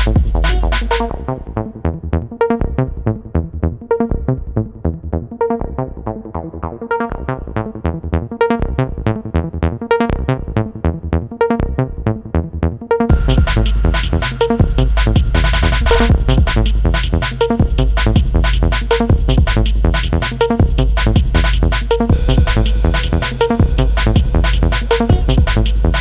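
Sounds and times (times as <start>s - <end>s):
electronic dance music: 0.0s - 1.1s, 13.1s - 26.0s
plucked synth notes: 13.1s - 26.0s.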